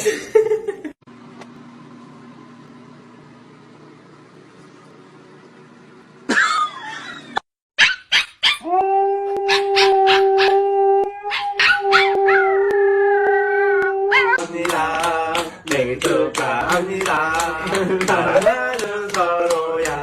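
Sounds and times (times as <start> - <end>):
dog howling: 8.4 - 14.4.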